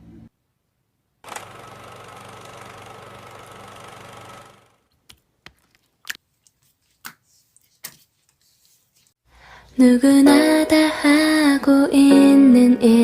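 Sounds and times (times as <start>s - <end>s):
small motor humming: 1.2s - 4.8s.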